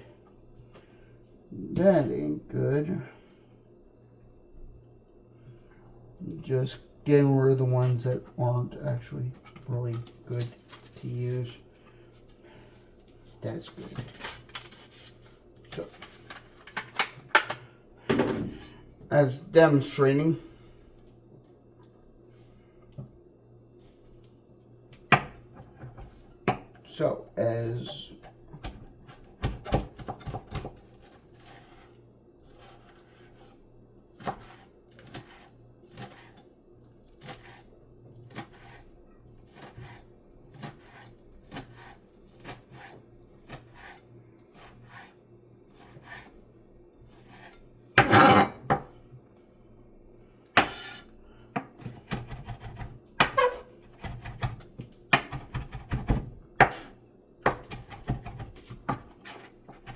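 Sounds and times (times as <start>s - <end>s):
knife chopping on cutting board: 28.2s - 31.9s, 34.2s - 36.4s, 37.1s - 37.6s, 38.3s - 38.8s, 39.5s - 44.0s, 47.2s - 48.9s, 50.6s - 51.0s, 51.6s - 59.9s.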